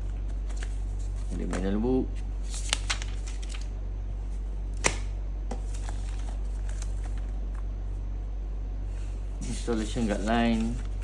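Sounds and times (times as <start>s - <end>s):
steady low hum: 0.0s - 11.0s
paper being handled: 0.3s - 3.7s, 5.6s - 7.3s, 9.4s - 11.0s.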